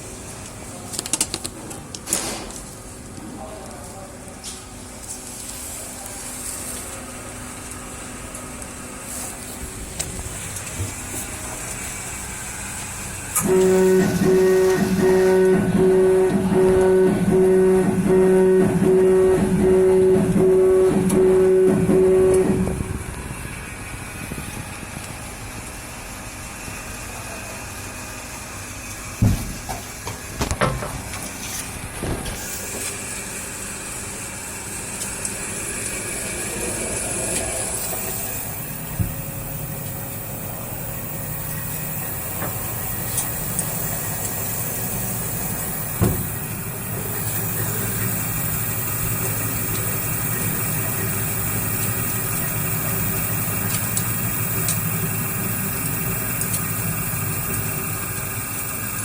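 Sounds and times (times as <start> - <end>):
machine humming with hiss: 4.5 - 59.0
sharp knocks: 46.0 - 46.4.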